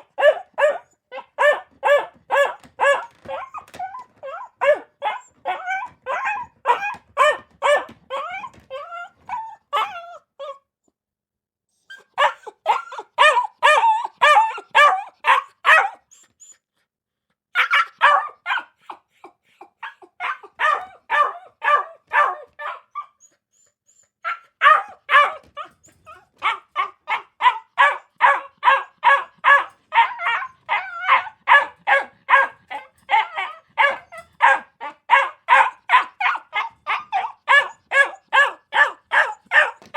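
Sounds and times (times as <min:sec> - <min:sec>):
dog barking: 0:00.0 - 0:03.4, 0:04.6 - 0:08.5, 0:12.2 - 0:16.0, 0:17.6 - 0:19.0, 0:19.8 - 0:23.1, 0:24.2 - 0:25.8, 0:26.4 - 0:39.9.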